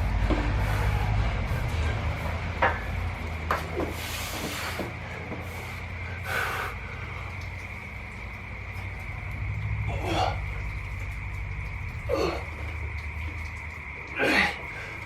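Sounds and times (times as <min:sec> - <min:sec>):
low drone: 0:00.0 - 0:15.0
person exhaling with a hiss: 0:03.9 - 0:07.2.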